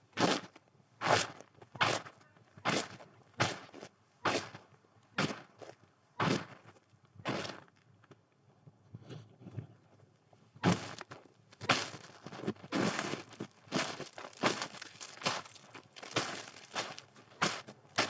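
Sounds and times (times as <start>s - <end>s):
footsteps crunching through snow: 12.7s - 18.0s.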